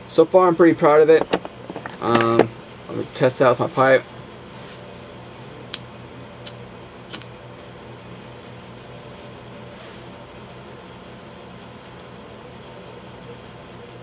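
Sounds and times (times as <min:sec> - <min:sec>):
steady low hum: 0:00.0 - 0:14.0
torch lighter sparking clicks: 0:05.7 - 0:07.3.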